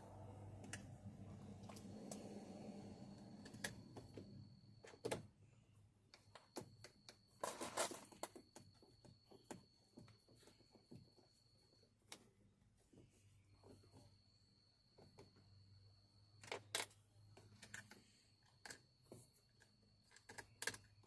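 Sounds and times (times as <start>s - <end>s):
low hum: 0.0s - 4.8s.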